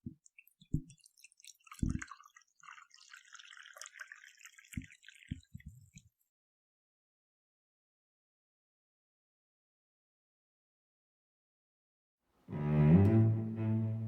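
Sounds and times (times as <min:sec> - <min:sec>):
crackly dripping patter: 0:00.0 - 0:06.2.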